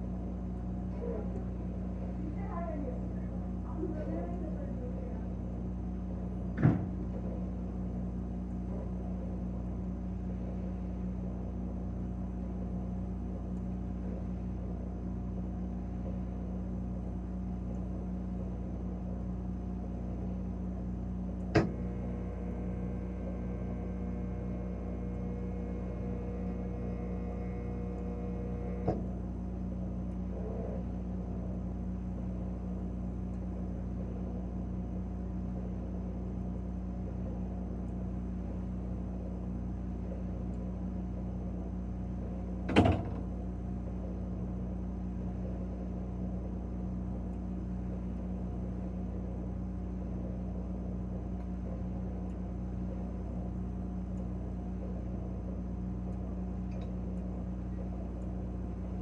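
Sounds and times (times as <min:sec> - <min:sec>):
refrigerator humming: 0:00.0 - 0:59.0
click: 0:21.4 - 0:21.8, 0:51.4 - 0:51.6, 0:52.2 - 0:52.4, 0:56.1 - 0:59.0.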